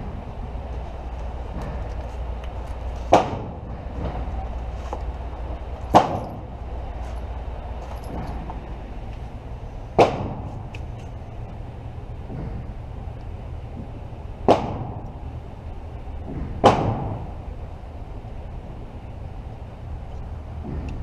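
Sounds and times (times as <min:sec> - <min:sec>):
gunshots: 0:10.0 - 0:10.5.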